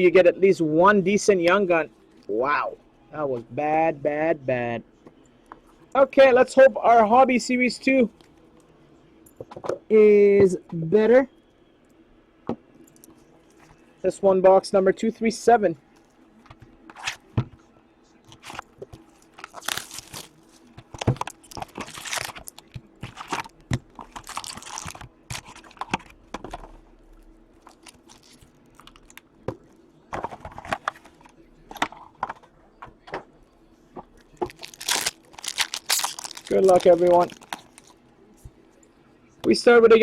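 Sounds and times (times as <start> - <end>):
plastic and foil wrapping crinkling: 18.3 - 26.2, 27.6 - 29.2, 34.4 - 38.0.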